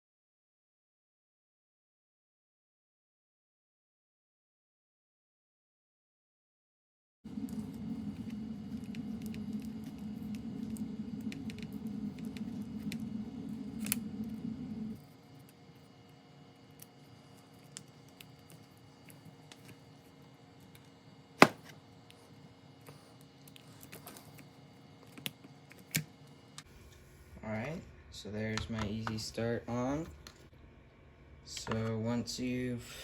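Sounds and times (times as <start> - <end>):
steady low hum: 7.3 - 33.0.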